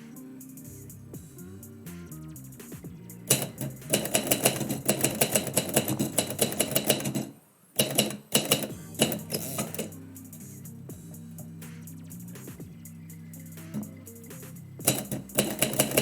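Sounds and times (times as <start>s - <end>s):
typewriter keys striking: 3.3s - 10.0s, 14.8s - 16.0s.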